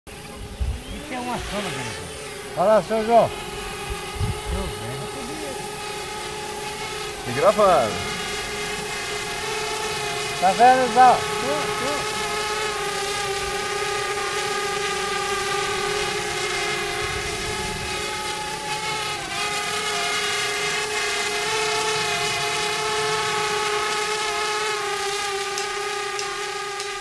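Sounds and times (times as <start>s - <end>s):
drone propellers whining: 0.1s - 27.0s.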